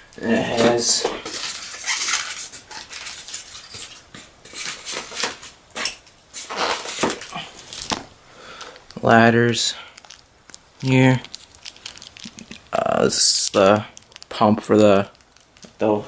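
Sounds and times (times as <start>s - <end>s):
packaging rustling: 0.1s - 15.8s
toy parts clicking and rattling: 10.0s - 14.3s.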